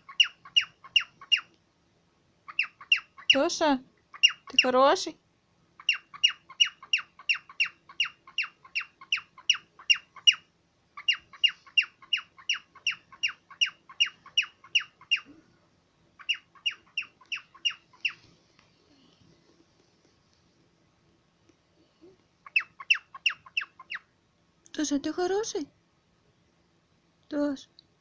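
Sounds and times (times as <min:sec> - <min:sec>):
cockatiel calling: 0:00.0 - 0:01.6, 0:02.5 - 0:03.4, 0:04.1 - 0:04.7, 0:05.8 - 0:15.4, 0:16.2 - 0:18.3, 0:22.4 - 0:24.1.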